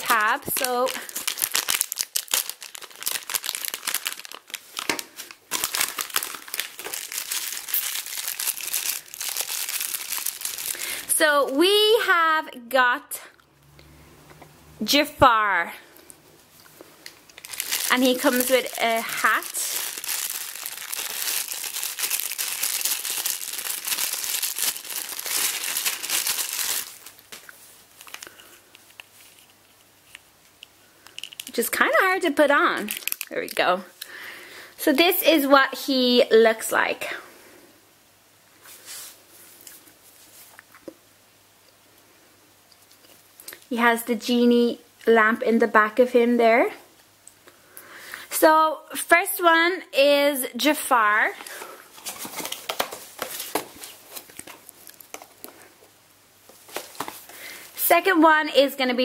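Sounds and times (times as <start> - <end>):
foil packet crinkling: 0.0 - 11.2, 17.0 - 30.3, 31.0 - 31.6, 32.8 - 33.6, 51.4 - 55.8, 56.5 - 57.7.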